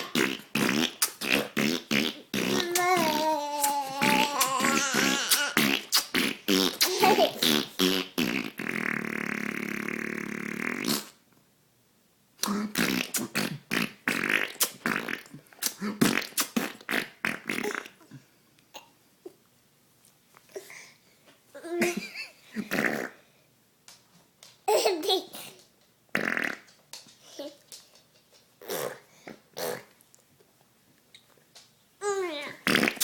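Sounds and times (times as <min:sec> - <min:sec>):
lip raspberry fart noises: 0:00.0 - 0:11.3, 0:12.4 - 0:18.2, 0:21.8 - 0:23.2, 0:26.1 - 0:26.8, 0:28.6 - 0:30.0, 0:32.4 - 0:33.0.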